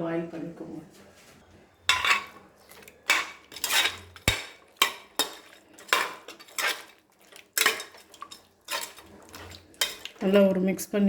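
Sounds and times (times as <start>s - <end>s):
metal spoon scraping pot: 1.9s - 10.6s.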